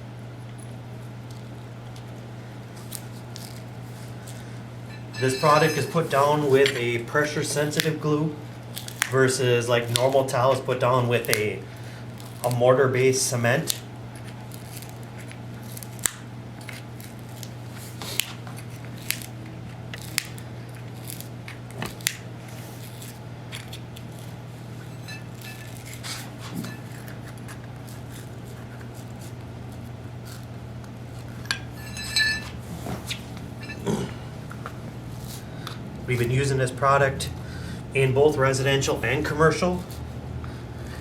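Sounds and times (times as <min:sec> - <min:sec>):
low hum: 0:04.7 - 0:07.1, 0:24.8 - 0:25.7, 0:31.3 - 0:35.0
metallic clink: 0:04.9 - 0:06.7, 0:24.8 - 0:25.7, 0:31.4 - 0:32.6, 0:33.6 - 0:33.9.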